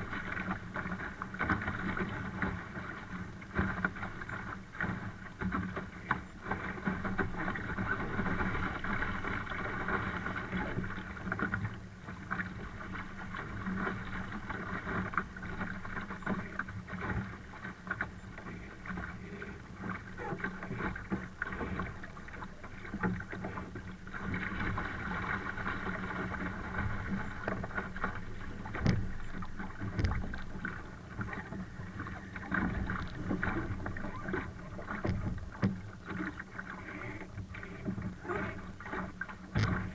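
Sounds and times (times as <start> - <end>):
water rushing around hull: 0.0 - 39.9
hull and rig knocks and slaps: 29.8 - 30.4, 39.5 - 39.9.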